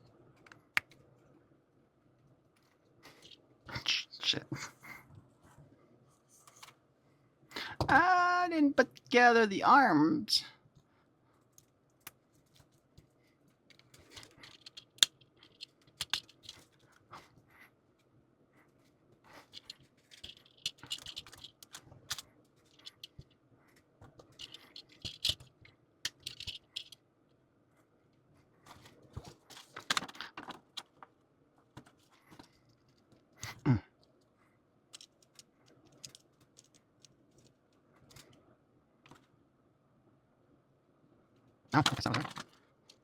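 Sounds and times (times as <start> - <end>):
plastic parts clicking and rattling: 2.6 - 3.4, 11.4 - 17.3, 19.3 - 27.0, 28.6 - 33.3, 34.9 - 38.4, 39.0 - 39.3, 41.8 - 43.0.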